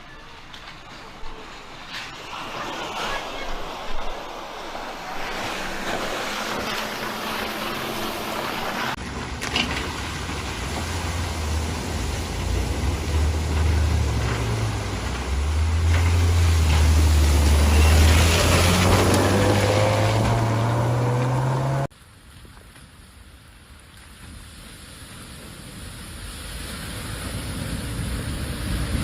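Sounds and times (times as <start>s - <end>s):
water rushing: 0.0s - 21.9s
low engine drone: 1.1s - 21.9s.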